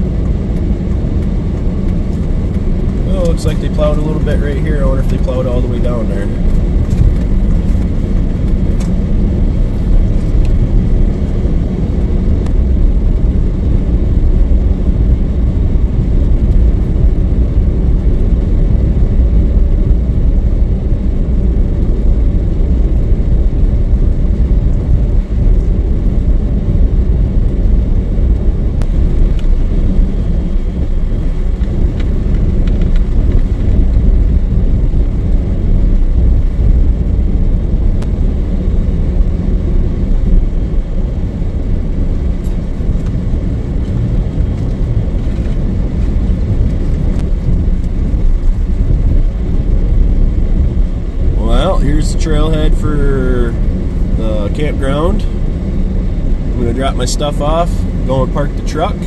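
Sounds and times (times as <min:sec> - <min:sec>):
truck engine and tyre rumble: 0:00.0 - 0:59.0.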